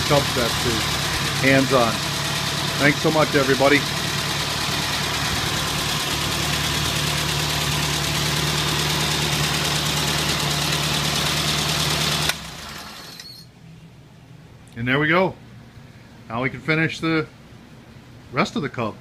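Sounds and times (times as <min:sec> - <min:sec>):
tractor engine idling: 0:00.0 - 0:13.2.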